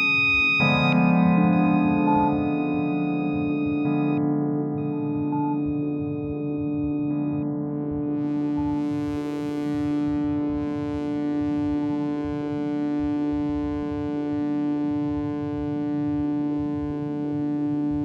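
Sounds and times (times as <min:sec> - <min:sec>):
synthesizer drone: 0:00.0 - 0:09.1.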